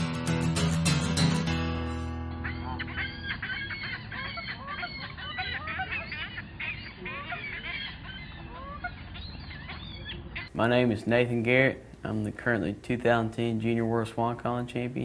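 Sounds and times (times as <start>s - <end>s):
waterfowl call clucks and honks: 2.3s - 10.5s.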